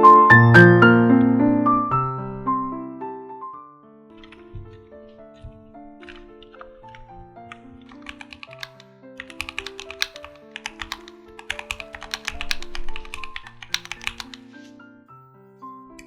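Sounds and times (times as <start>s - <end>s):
piano-like background music: 0.0s - 16.0s
mechanical keyboard typing: 4.2s - 14.5s.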